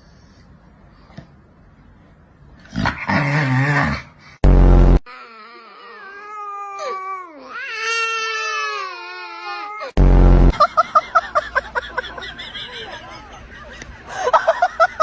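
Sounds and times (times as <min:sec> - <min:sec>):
buzzy blast: 0:04.4 - 0:05.0, 0:10.0 - 0:11.2
rhythmic honk-like pulses: 0:10.0 - 0:10.7.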